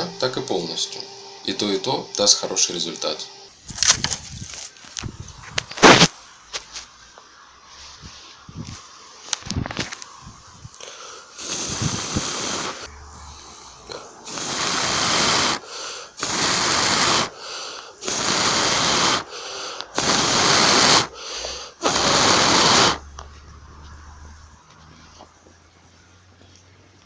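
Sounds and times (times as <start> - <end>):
person blowing on ember: 10.2 - 23.2
quick breaths drawn in: 10.7 - 23.0.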